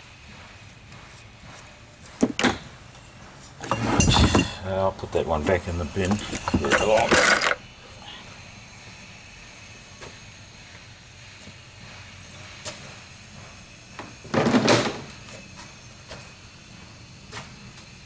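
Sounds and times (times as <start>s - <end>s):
loud scraping clatter: 3.6s - 7.6s.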